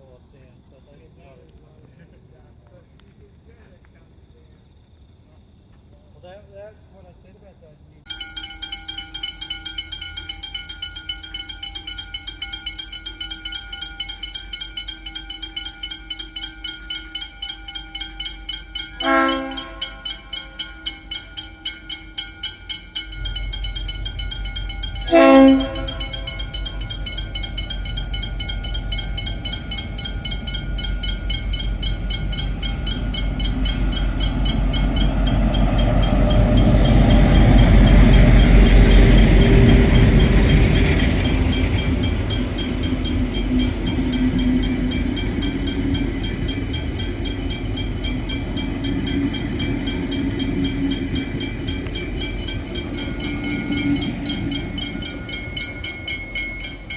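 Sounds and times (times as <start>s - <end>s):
level crossing bells ringing: 8.1s - 56.9s
locomotive horn blasts: 18.9s - 20.6s, 24.8s - 28.2s
diesel engine rumbling: 23.0s - 56.9s.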